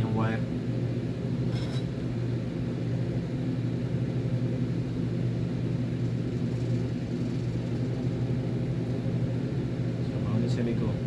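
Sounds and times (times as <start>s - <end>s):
low machine hum: 0.0s - 11.0s.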